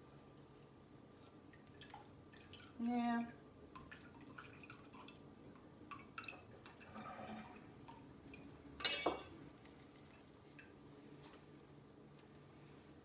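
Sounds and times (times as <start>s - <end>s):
glass clink: 8.8s - 9.3s.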